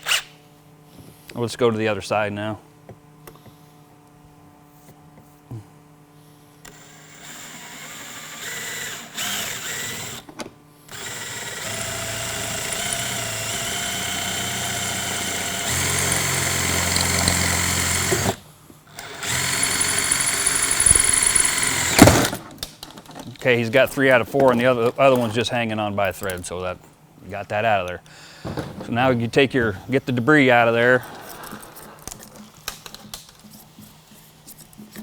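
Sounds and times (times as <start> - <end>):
power drill grinding rivets: 10.9 - 18.4, 19.0 - 22.5.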